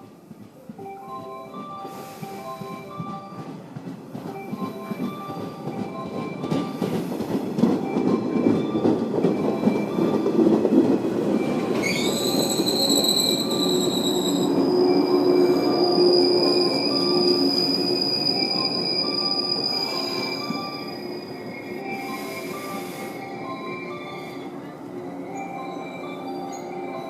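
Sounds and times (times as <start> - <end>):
train running rumble: 0.0 - 27.0
train brake squeal: 11.4 - 27.0.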